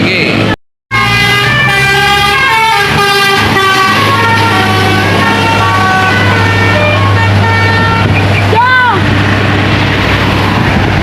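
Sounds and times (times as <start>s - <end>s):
pitched air horns playing a tune: 0.9s - 8.2s.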